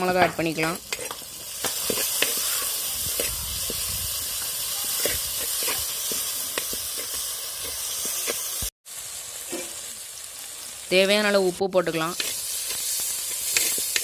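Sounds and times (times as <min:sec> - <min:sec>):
vegetables sizzling in oil: 0:00.0 - 0:14.0
spatula scraping and tapping: 0:00.2 - 0:02.5, 0:12.2 - 0:14.0.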